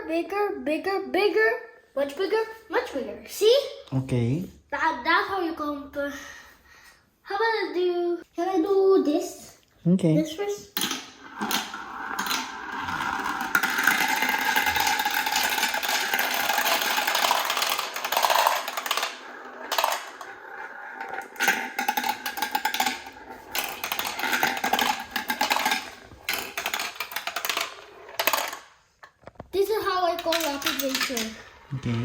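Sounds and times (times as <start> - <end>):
marbles rattling down plastic track: 10.8 - 28.8, 29.6 - 32.0.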